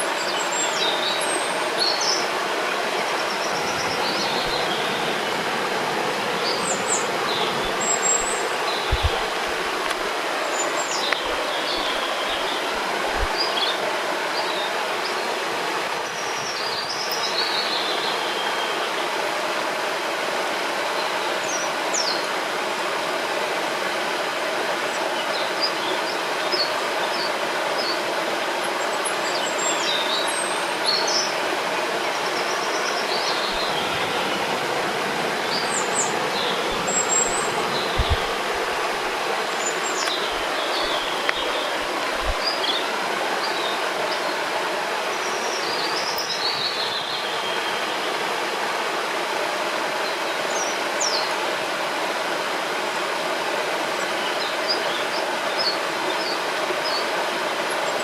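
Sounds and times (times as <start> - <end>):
river water rushing: 0.0 - 58.0
small birds chirping: 0.2 - 5.5, 6.1 - 13.8, 32.0 - 44.3.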